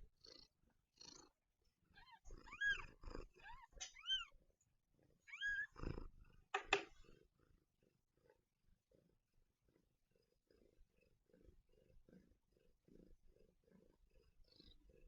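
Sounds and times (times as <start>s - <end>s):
kittens mewing: 5.3s - 5.8s.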